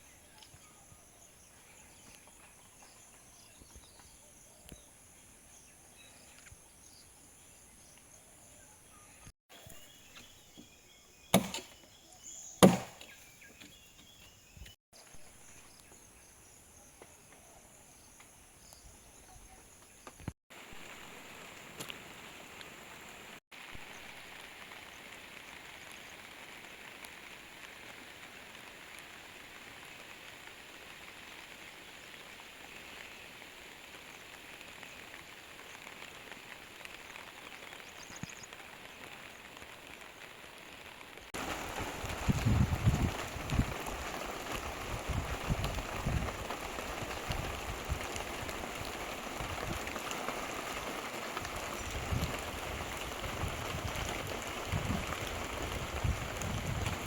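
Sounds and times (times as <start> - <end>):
steady hiss: 15.2 - 57.0.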